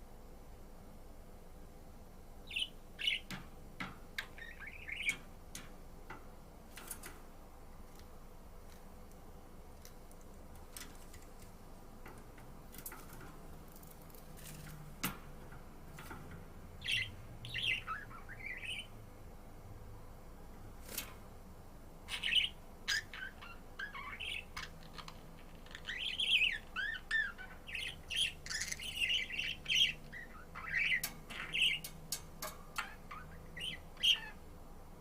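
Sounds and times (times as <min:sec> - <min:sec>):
budgerigar chirping: 0:02.4 - 0:03.3, 0:04.2 - 0:05.2, 0:16.8 - 0:18.9, 0:22.1 - 0:31.9, 0:32.8 - 0:34.4.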